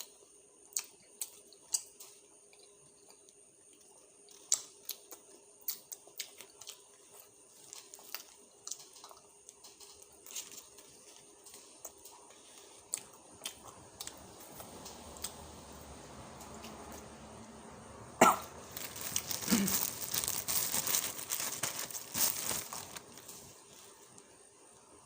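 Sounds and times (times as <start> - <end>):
crunching and crinkling: 0.8 - 17.1, 18.2 - 24.9
person coughing: 18.2 - 18.5, 19.4 - 19.8.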